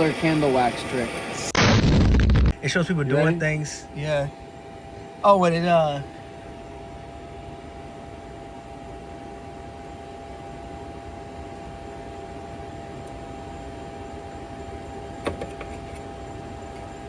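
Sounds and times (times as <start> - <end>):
torch flame rushing: 0.2 - 2.6.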